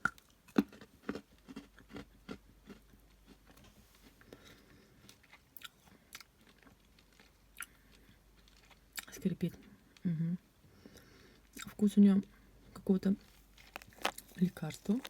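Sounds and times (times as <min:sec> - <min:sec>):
chewing clay: 0:00.0 - 0:04.2, 0:13.2 - 0:15.0
gritty crackles: 0:13.2 - 0:15.0.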